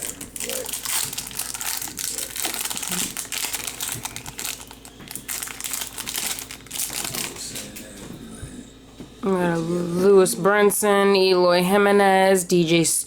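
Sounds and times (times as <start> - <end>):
foil wrapper crinkling: 0.0 - 7.7.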